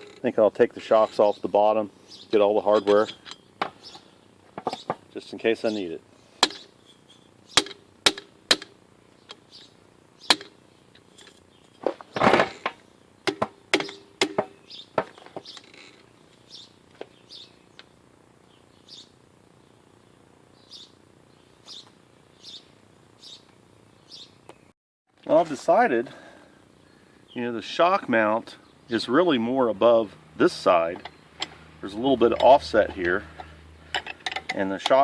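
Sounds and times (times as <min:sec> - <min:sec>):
hand tools clicking on metal: 0:32.2 - 0:35.0.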